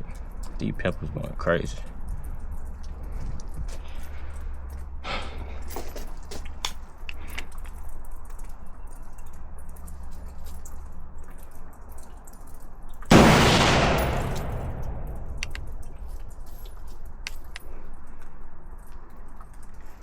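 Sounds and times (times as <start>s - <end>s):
loud close gunshot: 13.1s - 16.0s
low rumble: 13.1s - 16.6s.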